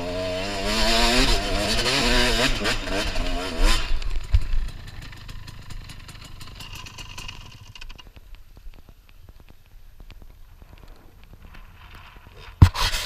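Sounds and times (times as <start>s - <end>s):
off-road vehicle engine running: 0.0s - 8.1s
faint ticking and clatter: 4.2s - 12.2s.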